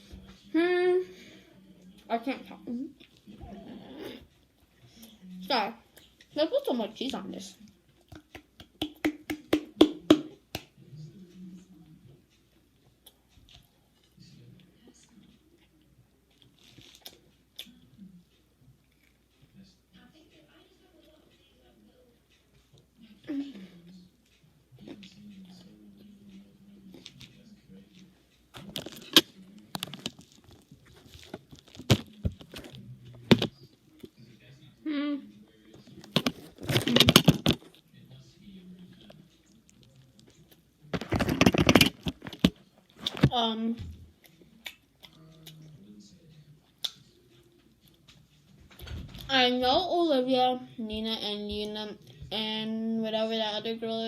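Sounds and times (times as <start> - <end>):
cheese container tapping: 8.2 - 10.7.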